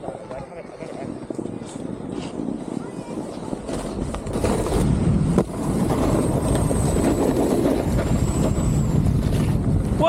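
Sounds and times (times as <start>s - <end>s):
wind rushing on microphone: 0.0s - 10.0s
snowboard carving over snow: 0.9s - 10.0s.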